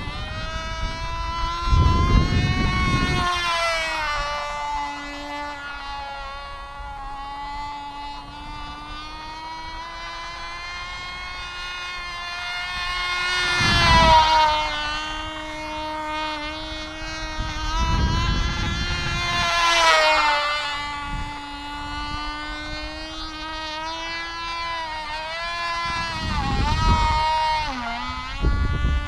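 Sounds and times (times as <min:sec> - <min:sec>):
model plane engine buzzing: 0:00.0 - 0:29.0.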